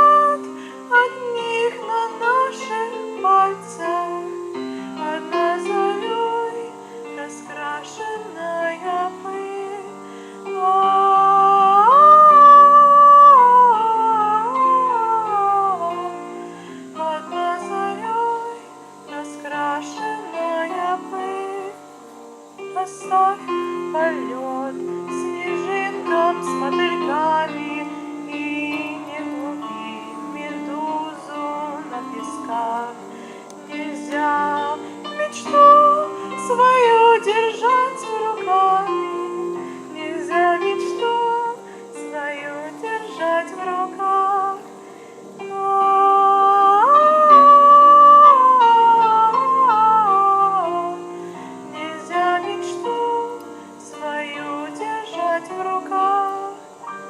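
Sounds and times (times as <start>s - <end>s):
sliding held melody line: 0.0s - 44.7s.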